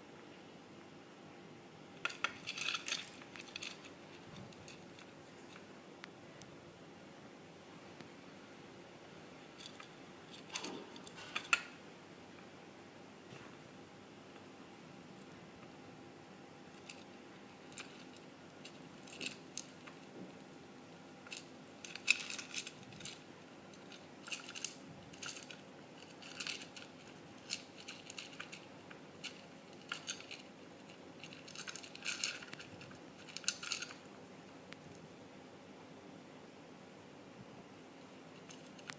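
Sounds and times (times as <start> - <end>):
seeds clicking in a food bowl: 21.2 - 34.1.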